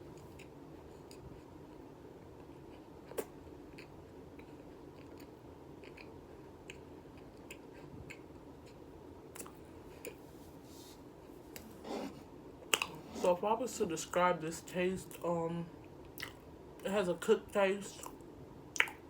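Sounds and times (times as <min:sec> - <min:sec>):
person chewing crisp food: 0:00.1 - 0:10.3, 0:12.6 - 0:13.4, 0:16.2 - 0:16.4.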